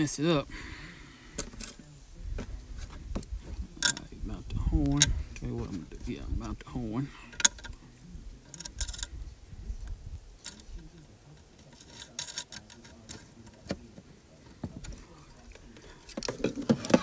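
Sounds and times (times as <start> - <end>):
tools and hardware clinking: 3.8 - 4.1, 7.2 - 7.8, 8.4 - 9.2, 10.4 - 13.8, 14.5 - 17.0.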